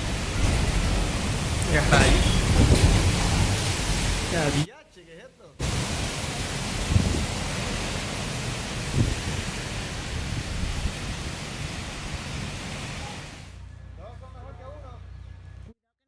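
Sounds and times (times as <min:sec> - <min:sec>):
wind buffeting microphone: 0:00.0 - 0:04.6, 0:05.6 - 0:12.8
wind and rain rushing: 0:00.0 - 0:04.7, 0:05.6 - 0:13.6.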